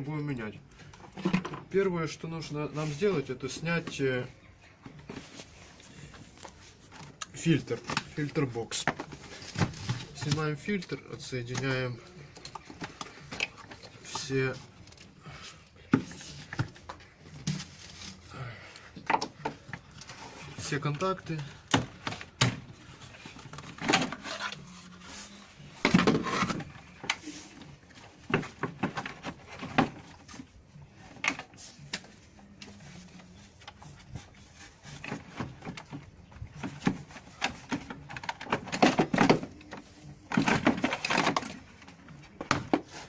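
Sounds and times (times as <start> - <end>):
plastic scraping: 19.1 - 30.5.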